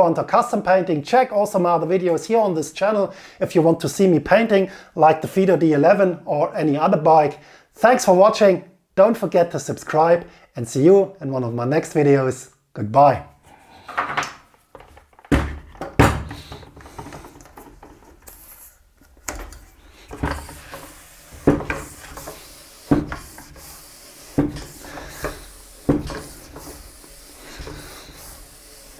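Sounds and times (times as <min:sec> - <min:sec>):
hand pump strokes with thuds: 0:13.9 - 0:28.9
faint hiss: 0:16.0 - 0:28.9.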